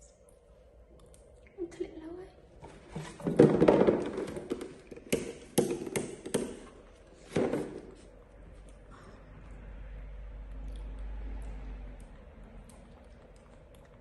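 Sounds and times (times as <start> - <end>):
sharp knocks on hard surface: 3.2 - 6.7.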